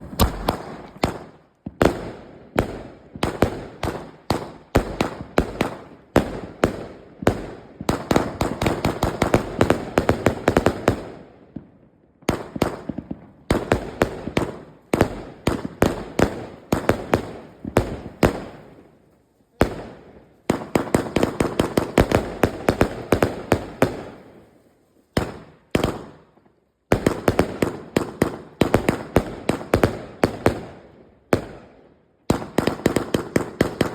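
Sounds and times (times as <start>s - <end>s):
firework bangs: 0.0s - 11.6s, 12.2s - 18.9s, 19.5s - 26.4s.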